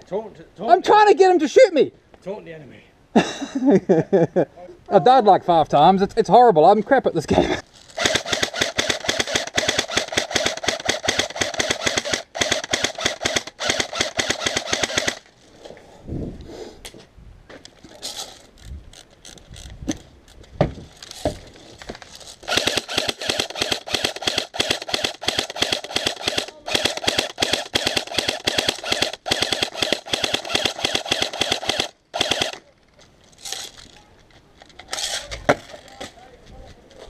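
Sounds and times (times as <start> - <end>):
airsoft full-auto fire: 8.0 - 15.3, 22.5 - 32.7
airsoft gun single shots: 22.5 - 32.6.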